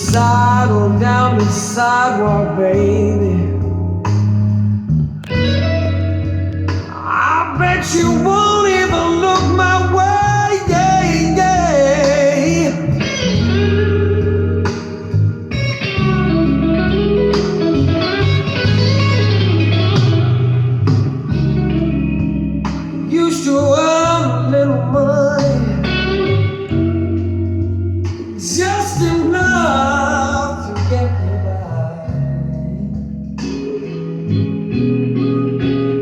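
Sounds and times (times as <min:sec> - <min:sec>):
person singing: 0:00.0 - 0:04.2, 0:06.8 - 0:13.8, 0:22.8 - 0:26.8, 0:28.0 - 0:33.9
bass line: 0:00.0 - 0:36.0
guitar: 0:00.0 - 0:36.0.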